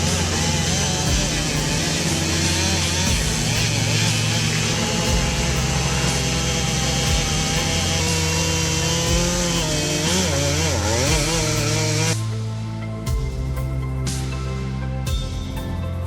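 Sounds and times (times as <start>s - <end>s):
power saw cutting wood: 0.0s - 12.5s.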